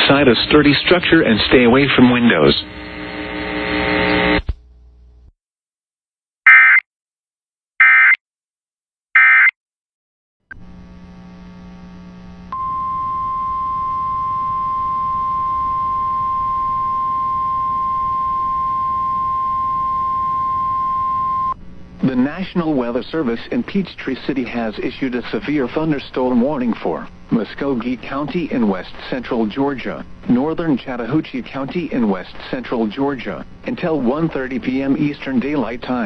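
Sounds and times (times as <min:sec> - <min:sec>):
faint radio hum: 0:00.0 - 0:04.4
steady alarm tone: 0:12.5 - 0:21.6.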